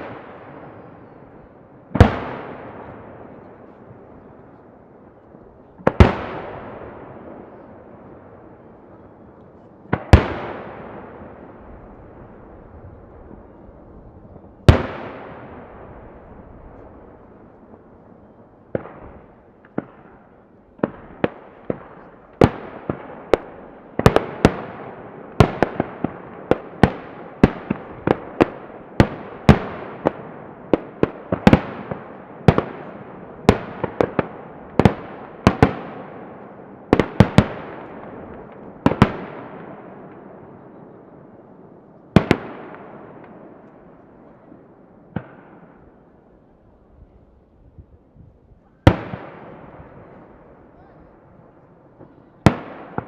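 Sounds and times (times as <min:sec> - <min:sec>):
firework shells bursting with echoes: 0:18.6 - 0:46.2.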